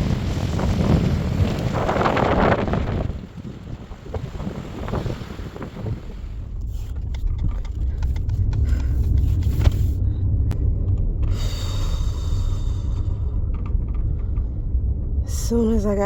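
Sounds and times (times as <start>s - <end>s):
low rumble inside car: 0.0s - 16.0s
sharp clicks and knocks: 6.9s - 9.9s, 13.0s - 14.6s.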